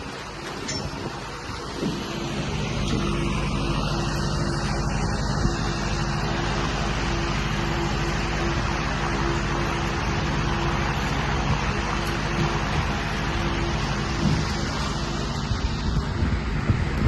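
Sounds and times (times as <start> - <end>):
machinery hum: 0.0 - 17.0.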